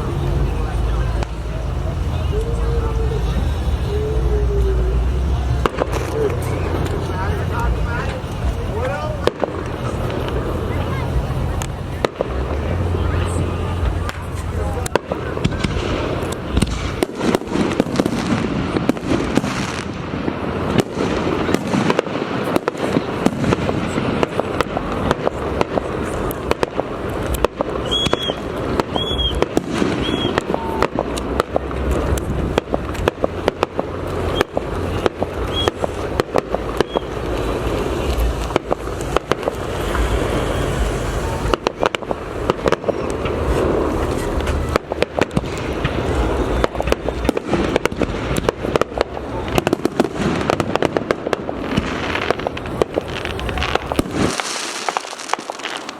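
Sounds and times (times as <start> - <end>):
low rumble: 0.0 - 21.6, 23.2 - 49.6
fireworks crackling: 0.0 - 55.9
firework shell bursts: 0.8 - 55.9.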